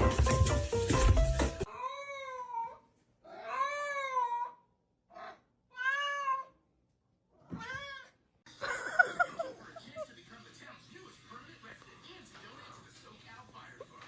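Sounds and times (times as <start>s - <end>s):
cat meowing: 1.7s - 6.6s, 7.4s - 8.2s.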